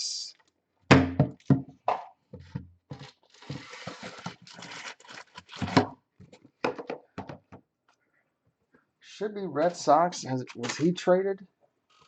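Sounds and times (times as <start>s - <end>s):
packaging rustling: 2.9s - 6.5s.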